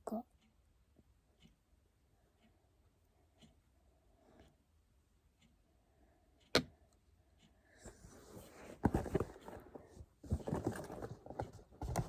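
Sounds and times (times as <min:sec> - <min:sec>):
packaging rustling: 0:08.4 - 0:12.0.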